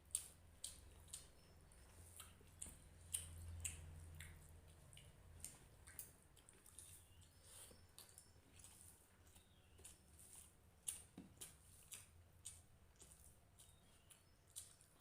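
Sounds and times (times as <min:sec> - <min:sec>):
faint low hum: 0:00.0 - 0:15.0
wet chewing and lip-smacking: 0:00.0 - 0:15.0.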